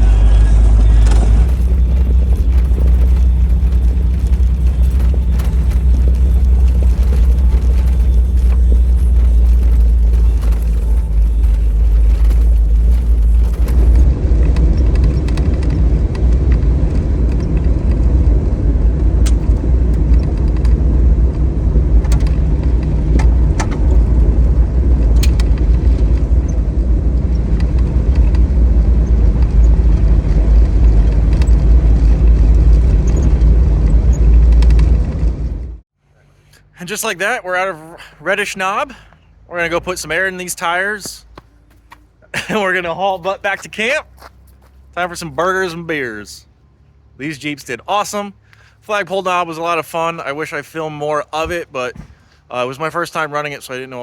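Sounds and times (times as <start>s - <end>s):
vehicle rumbling on gravel road: 0.0s - 54.0s
stones clicking and rattling: 1.2s - 17.8s.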